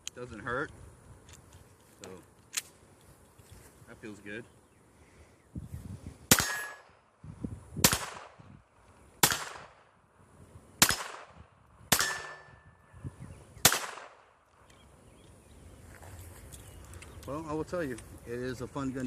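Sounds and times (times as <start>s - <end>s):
pistol shots: 6.3s - 6.9s, 7.8s - 8.4s, 9.2s - 9.9s, 10.8s - 12.6s, 13.6s - 14.4s
bullet ringing on steel target: 6.4s - 6.8s, 11.9s - 12.8s.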